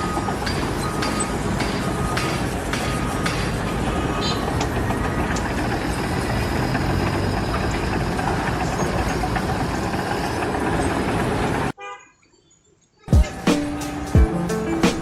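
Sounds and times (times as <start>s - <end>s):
loud machinery noise: 0.0s - 11.7s.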